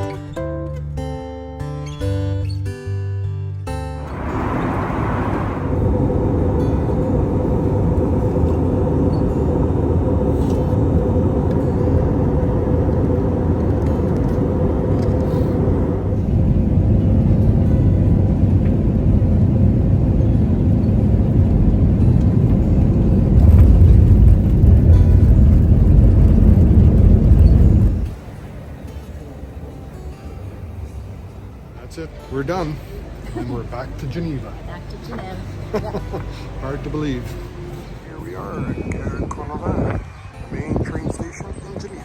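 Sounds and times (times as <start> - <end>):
vehicle rumble: 3.9 - 42.0
constant hum: 4.0 - 42.0.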